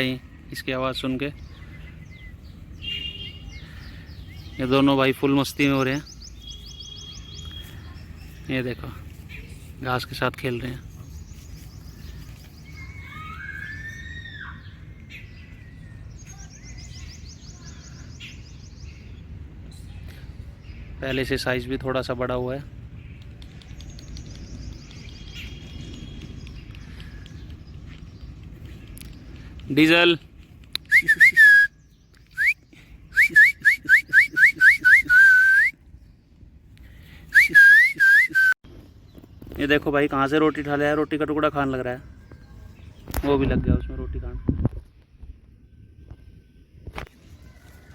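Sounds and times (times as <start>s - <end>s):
bird whistled call: 30.8s - 35.8s, 37.3s - 38.6s.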